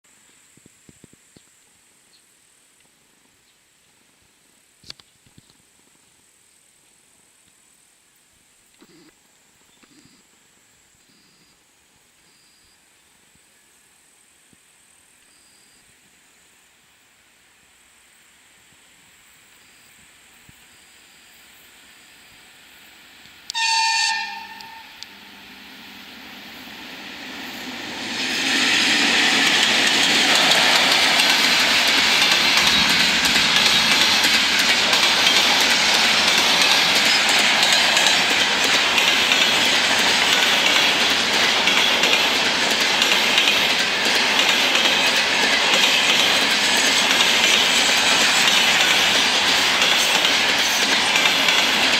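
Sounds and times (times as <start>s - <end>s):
train approaching: 20.8s - 51.9s
train horn blast: 23.5s - 25.7s.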